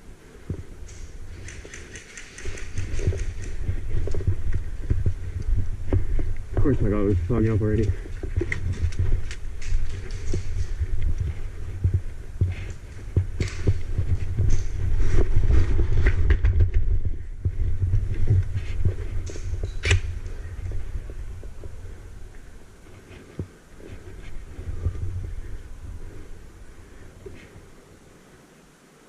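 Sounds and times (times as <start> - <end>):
rustling movement: 0.0 - 29.0
sharp clicks: 0.8 - 4.2.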